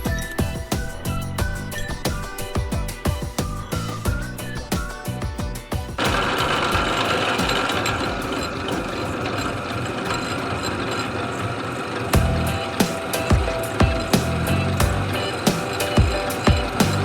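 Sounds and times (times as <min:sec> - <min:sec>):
background music: 0:00.0 - 0:09.2, 0:12.1 - 0:17.0
harsh metalworking noise: 0:03.8 - 0:17.0.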